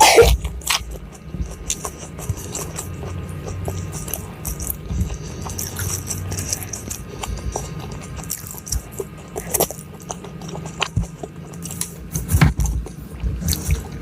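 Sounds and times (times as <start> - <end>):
close chewing: 0.0 - 14.0
soft thumps handling food: 12.1 - 13.8.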